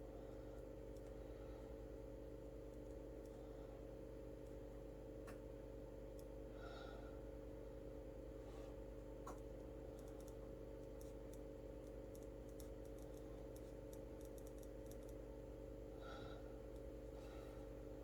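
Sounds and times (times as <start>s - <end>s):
steady electrical hum: 0.0s - 18.0s
typing clicks: 11.0s - 15.2s.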